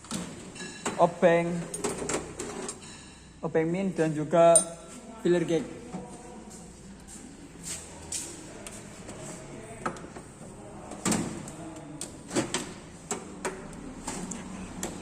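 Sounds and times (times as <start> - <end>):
metal hand tools clinking: 4.5 - 4.9.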